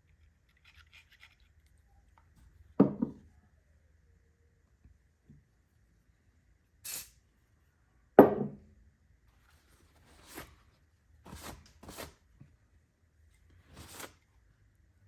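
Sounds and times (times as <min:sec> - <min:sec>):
spray bottle hissing: 0:06.8 - 0:07.1.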